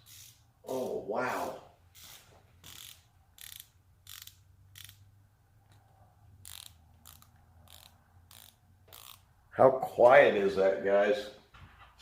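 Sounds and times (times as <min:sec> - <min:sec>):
ratcheting wrench buzzing: 0:00.0 - 0:00.5, 0:01.9 - 0:05.1, 0:06.4 - 0:09.4.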